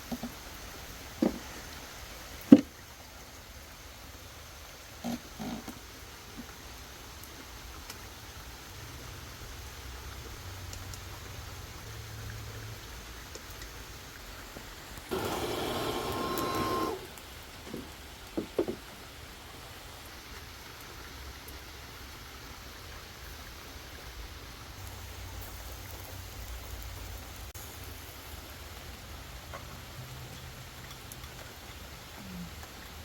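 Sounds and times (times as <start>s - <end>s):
steady rain: 0.0s - 33.0s
noisy burst with tone: 15.1s - 17.2s.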